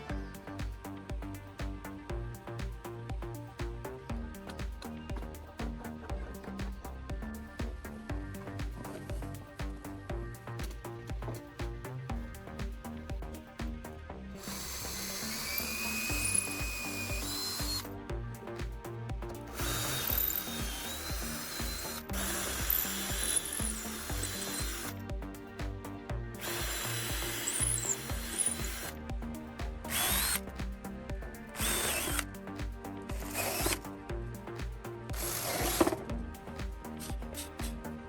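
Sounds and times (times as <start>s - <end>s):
background music with steady beat: 0.0s - 38.0s
power tool running: 14.4s - 17.9s, 19.5s - 25.0s, 26.4s - 29.0s, 29.9s - 30.4s, 31.5s - 32.3s, 33.1s - 33.8s, 35.1s - 36.1s.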